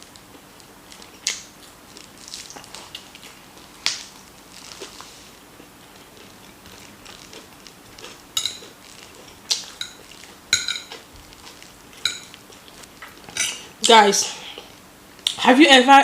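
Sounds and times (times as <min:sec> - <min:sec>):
cutlery clinking on a plate: 0:08.4 - 0:08.7, 0:09.5 - 0:11.0, 0:12.0 - 0:12.4.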